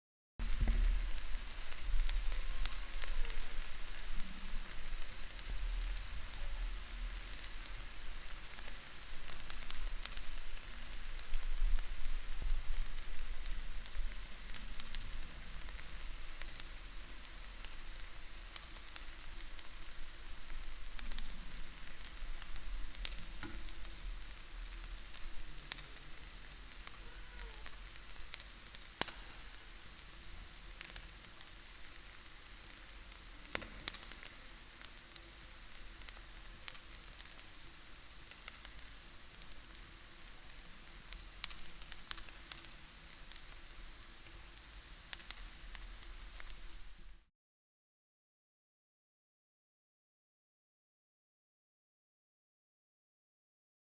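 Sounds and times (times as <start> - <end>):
fat popping and crackling: 0.4 - 29.7, 30.7 - 46.8
bacon sizzling in a pan: 0.4 - 47.3.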